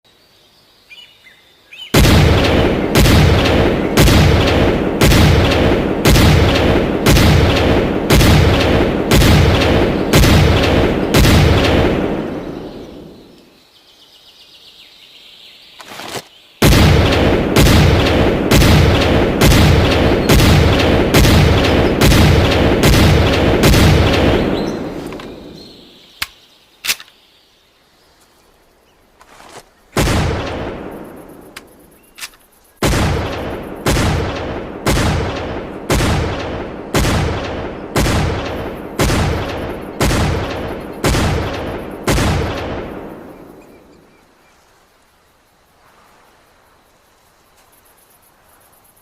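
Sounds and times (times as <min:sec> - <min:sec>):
rifle shots echoing: 0:02.0 - 0:13.3, 0:16.6 - 0:26.0, 0:30.0 - 0:44.0
click: 0:31.5 - 0:32.4.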